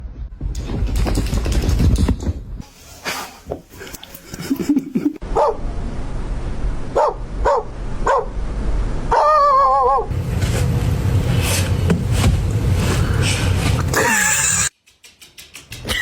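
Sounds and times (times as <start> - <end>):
dog barking and yipping: 7.0 - 8.3.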